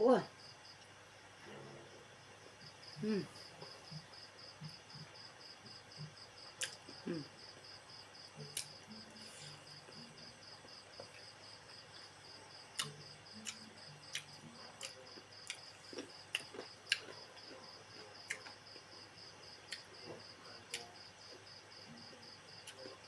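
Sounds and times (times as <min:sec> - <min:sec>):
cricket chirping: 0:00.0 - 0:23.0
person eating: 0:06.6 - 0:07.3, 0:12.8 - 0:18.6.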